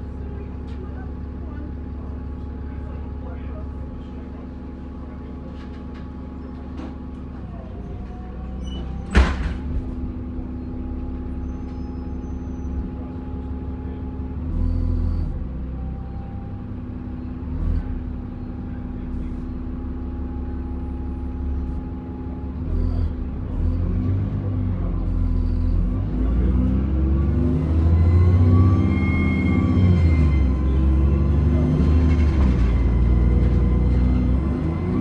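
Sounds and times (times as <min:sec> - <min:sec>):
bus engine droning: 0:00.0 - 0:35.0
turbocharger whine: 0:17.6 - 0:35.0.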